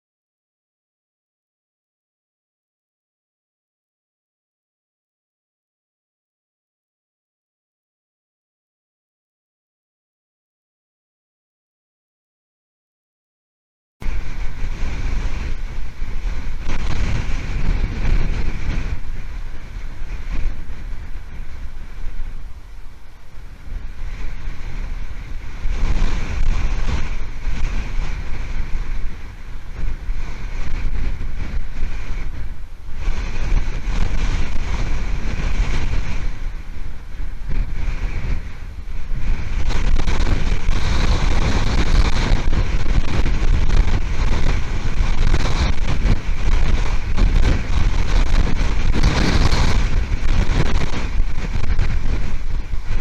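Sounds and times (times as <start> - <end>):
storm wind buffeting microphone: 14.0 - 53.0.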